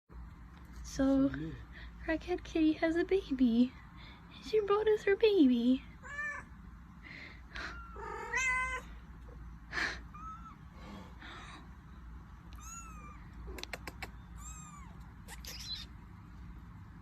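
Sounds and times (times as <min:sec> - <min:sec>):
cat meowing: 0:06.0 - 0:06.5, 0:07.7 - 0:08.9, 0:12.5 - 0:13.2, 0:14.4 - 0:15.8
sharp clicks: 0:13.5 - 0:14.2.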